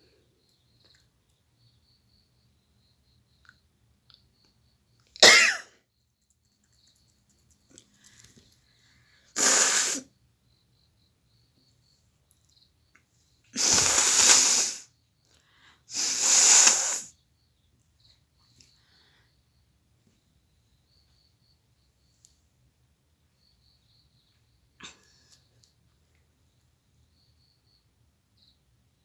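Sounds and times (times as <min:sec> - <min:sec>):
woman sneezing: 0:05.2 - 0:05.6, 0:13.6 - 0:14.8
woman blowing her nose: 0:09.4 - 0:10.1, 0:13.6 - 0:14.9, 0:15.9 - 0:17.1.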